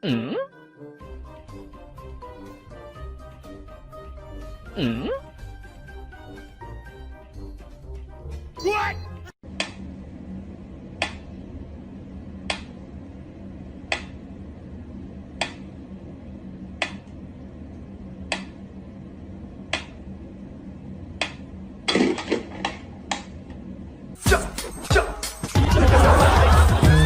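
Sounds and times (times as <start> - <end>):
low steady hum: 8.7 - 24.2.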